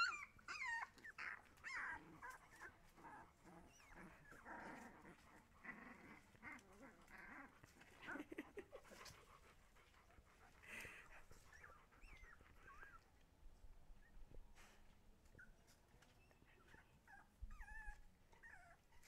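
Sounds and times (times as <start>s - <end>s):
puppy squeaky cries: 0.0s - 2.0s
puppies whimpering: 0.0s - 9.1s, 10.6s - 13.2s, 15.2s - 19.0s.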